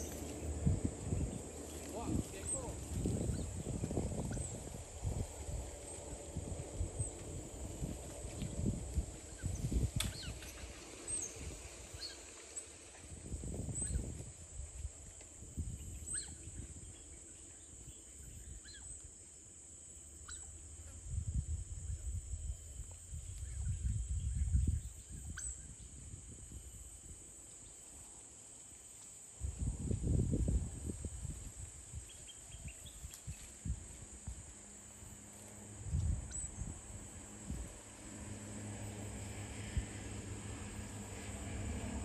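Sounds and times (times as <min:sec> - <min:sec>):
low rumbling noise: 0:00.0 - 0:14.7, 0:33.6 - 0:42.0.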